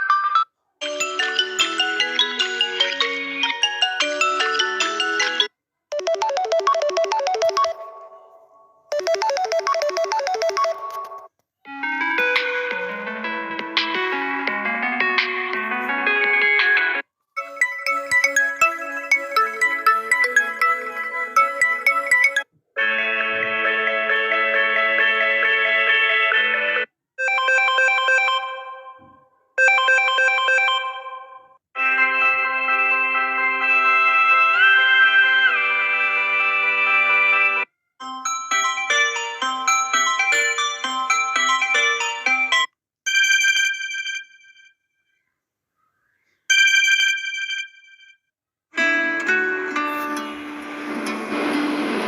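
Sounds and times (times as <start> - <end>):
mobile phone ringtone: 4.4 - 11.3, 17.4 - 22.5, 27.2 - 29.0, 29.6 - 31.4, 38.0 - 44.8, 46.5 - 48.2.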